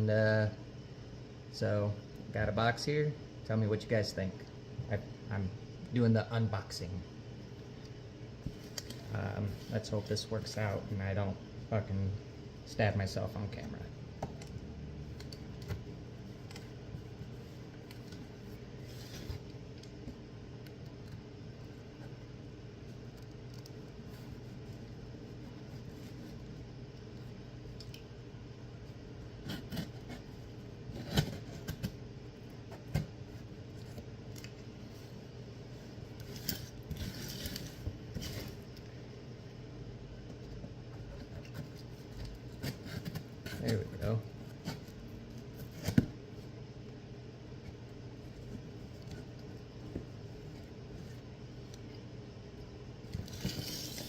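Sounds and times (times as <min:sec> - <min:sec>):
cardboard scraping and rustling: 0:15.8 - 0:19.6, 0:53.2 - 0:54.0.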